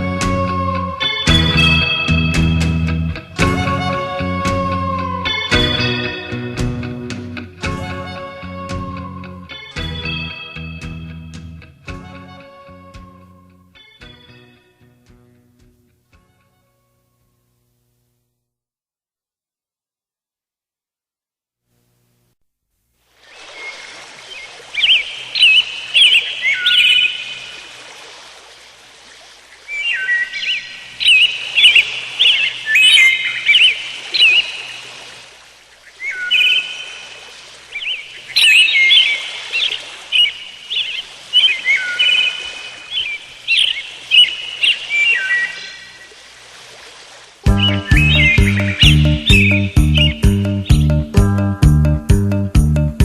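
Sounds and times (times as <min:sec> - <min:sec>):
songbird warbling: 0:00.0 - 0:02.3, 0:03.6 - 0:06.4, 0:23.2 - 0:27.8, 0:29.4 - 0:46.4, 0:47.5 - 0:51.1
faint steady hiss: 0:15.4 - 0:18.5, 0:21.6 - 0:47.4.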